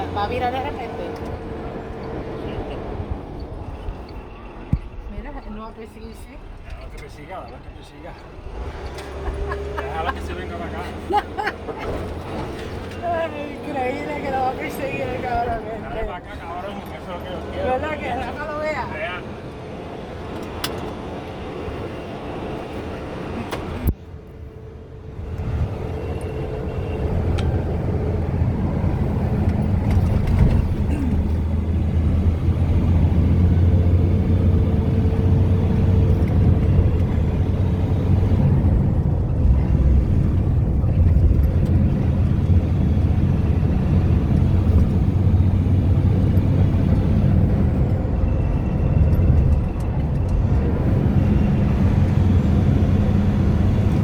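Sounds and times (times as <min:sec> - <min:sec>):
vehicle engine and road rumble: 0:00.0 - 0:54.0.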